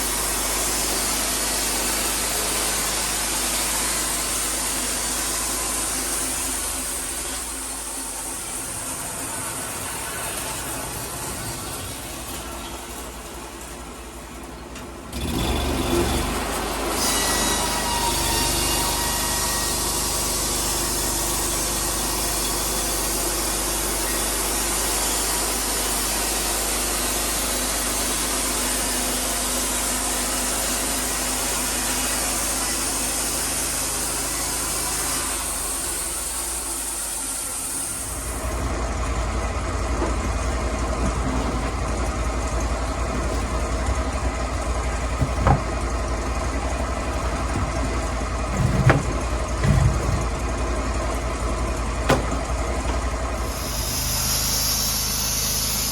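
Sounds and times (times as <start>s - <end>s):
sawmill engine sawing logs: 0.0s - 55.9s
high hiss: 53.4s - 55.9s.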